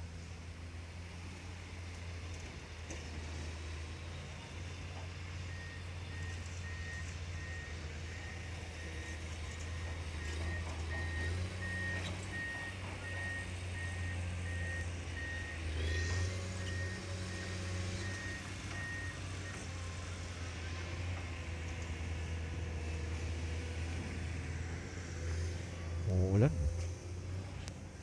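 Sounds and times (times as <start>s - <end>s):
diesel engine humming: 0.0s - 28.0s
reversing alarm beeping: 5.4s - 19.7s.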